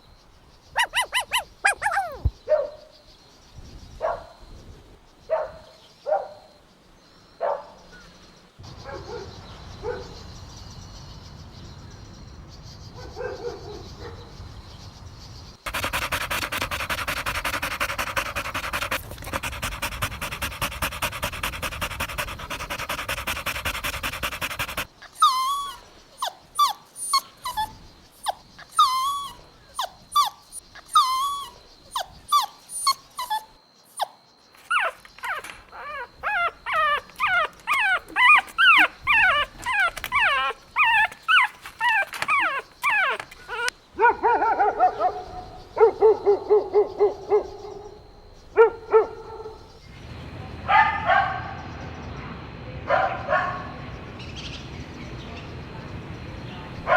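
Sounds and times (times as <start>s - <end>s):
puppy whimpering and yelping: 0.8s - 2.3s, 24.3s - 43.7s.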